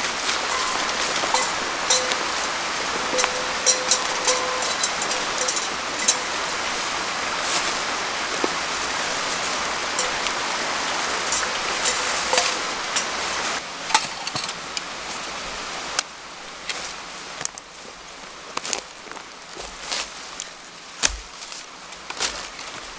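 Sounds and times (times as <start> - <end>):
water hissing: 0.0 - 13.7.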